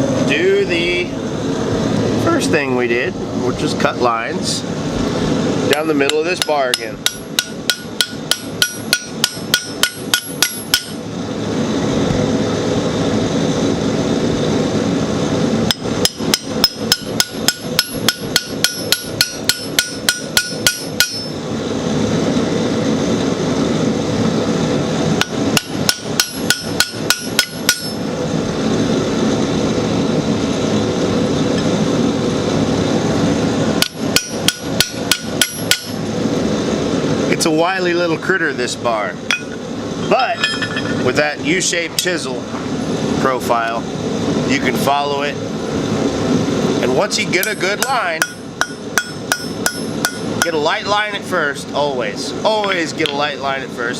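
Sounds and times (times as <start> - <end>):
hammer striking chisel on metal: 5.7 - 11.0, 15.7 - 21.4, 25.2 - 28.0, 33.8 - 36.0, 39.3 - 41.0, 47.4 - 50.6.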